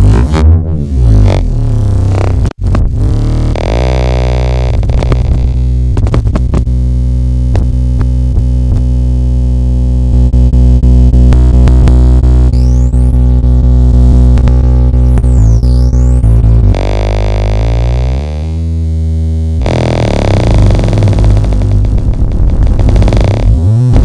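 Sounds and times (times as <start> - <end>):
synthesizer low drone: 0.0 - 24.0
sharp electronic clicks: 19.6 - 24.0.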